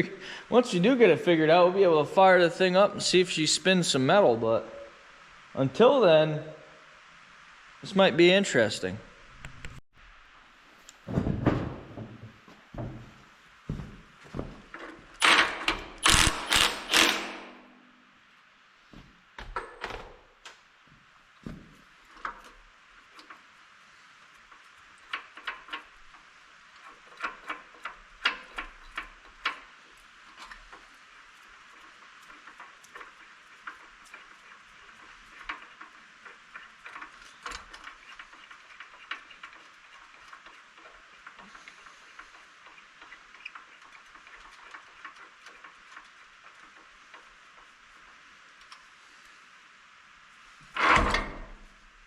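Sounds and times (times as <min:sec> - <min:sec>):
steady hiss: 0:00.0 - 0:19.6, 0:20.2 - 0:52.0
hand tools clicking and knocking: 0:14.7 - 0:17.6, 0:24.3 - 0:48.8.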